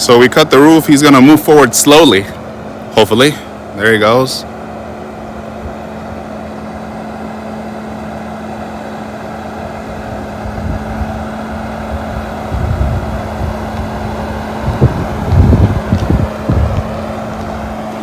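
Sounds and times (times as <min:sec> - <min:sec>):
car engine hum: 0:00.0 - 0:18.0
wind buffeting microphone: 0:09.8 - 0:18.0.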